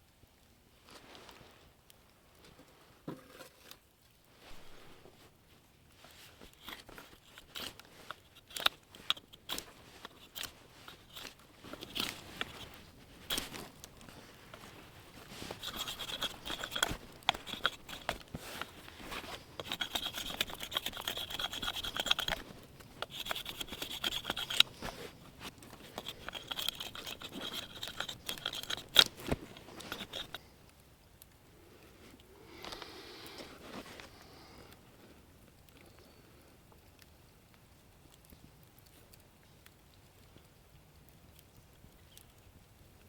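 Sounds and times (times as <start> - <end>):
scraping and rubbing strokes: 4.4 - 5.3, 6.0 - 30.5.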